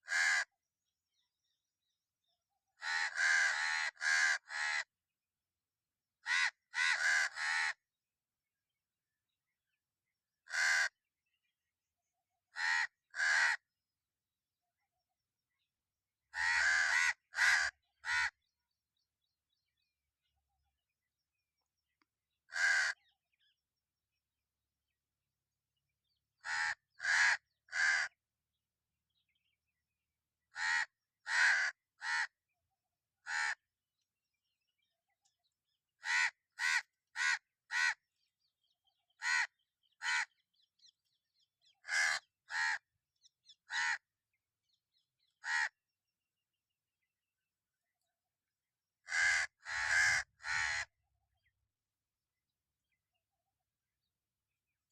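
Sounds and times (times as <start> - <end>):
crow cawing: 0.0 - 0.5, 2.8 - 4.9, 6.2 - 7.8, 10.4 - 11.0, 12.5 - 13.7, 16.3 - 18.4, 22.5 - 23.1, 26.4 - 28.2, 30.5 - 32.4, 33.2 - 33.6, 36.0 - 38.0, 39.2 - 40.6, 41.7 - 44.1, 45.4 - 45.8, 49.0 - 51.0.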